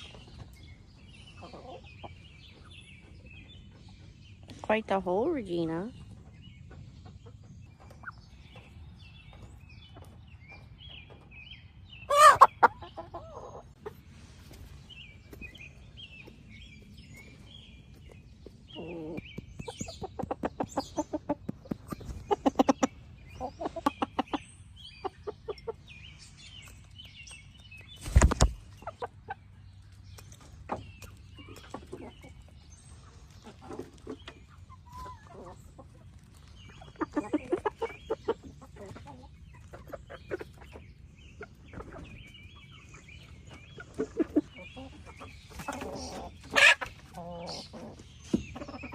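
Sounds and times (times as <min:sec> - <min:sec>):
chickens clucking: 0:00.0 - 0:48.9
chicken squawk: 0:12.1 - 0:13.7, 0:45.8 - 0:47.9.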